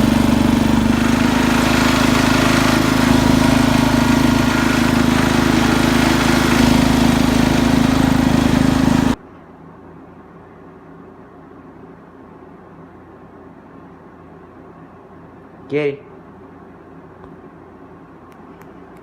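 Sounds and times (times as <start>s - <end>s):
garden tractor engine running: 0.0s - 9.2s.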